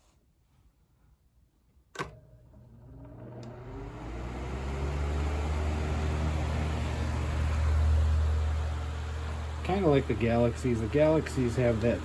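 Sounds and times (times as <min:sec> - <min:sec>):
fan motor whirring: 0:02.5 - 0:12.0.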